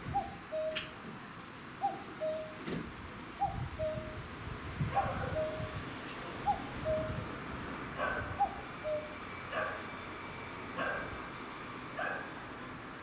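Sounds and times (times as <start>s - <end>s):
cuckoo calling: 0.0s - 1.0s, 1.8s - 2.7s, 3.4s - 4.2s, 5.0s - 5.8s, 6.4s - 7.2s, 8.4s - 9.9s.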